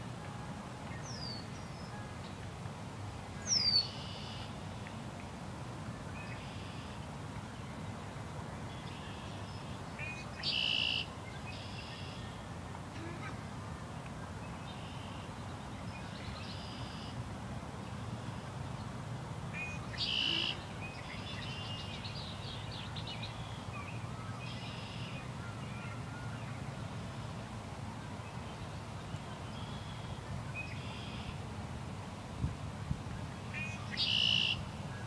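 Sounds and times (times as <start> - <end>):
birds calling: 19.6 - 25.2.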